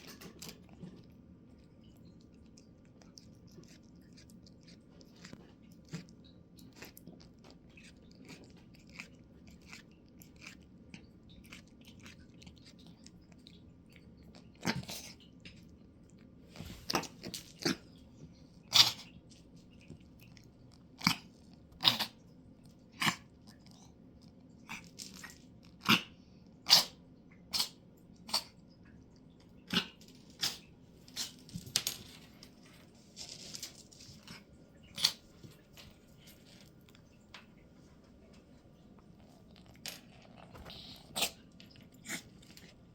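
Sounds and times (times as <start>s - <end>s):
crunchy chewing: 0.0s - 26.1s, 27.6s - 38.3s, 39.0s - 42.9s.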